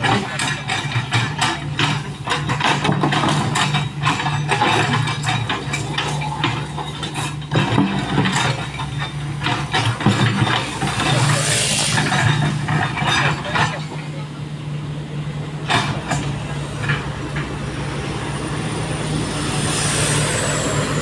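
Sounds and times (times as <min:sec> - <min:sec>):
metal knocks and clanks: 0:00.0 - 0:14.2, 0:15.6 - 0:17.6
excavator diesel engine running: 0:00.0 - 0:21.0.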